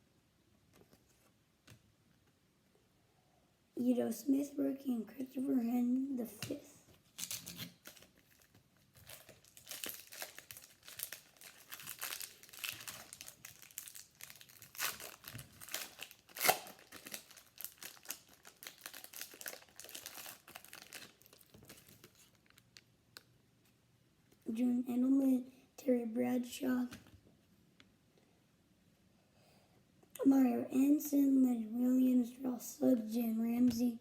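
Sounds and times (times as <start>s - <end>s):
foil wrapper crinkling and tearing: 7.1s - 23.3s.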